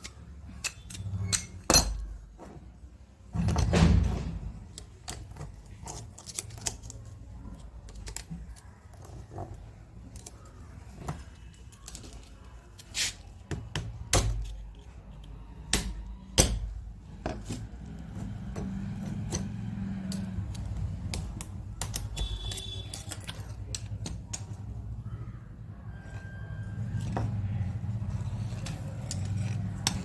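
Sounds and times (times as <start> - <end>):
metal tool parts clicking: 0.0 - 2.2, 4.7 - 24.9, 27.0 - 30.0.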